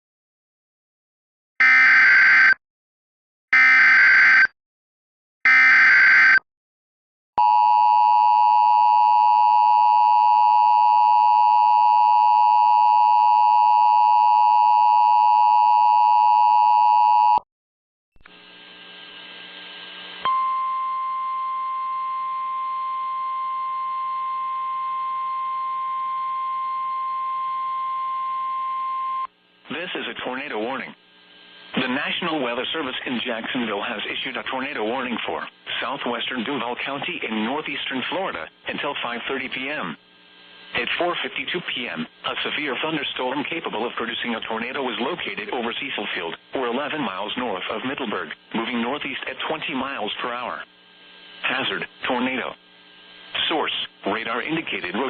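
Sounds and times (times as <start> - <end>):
steady single tone: 20.2 - 29.3
two-tone attention signal: 20.3 - 29.3.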